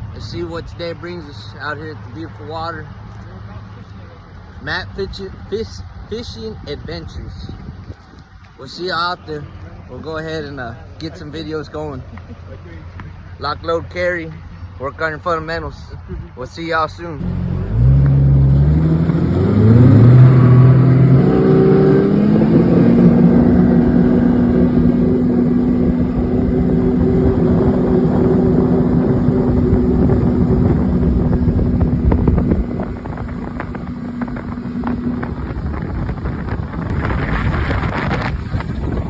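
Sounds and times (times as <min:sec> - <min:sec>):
wind on microphone: 0:04.8 - 0:08.5, 0:17.7 - 0:39.0
boat motor running: 0:17.2 - 0:39.0.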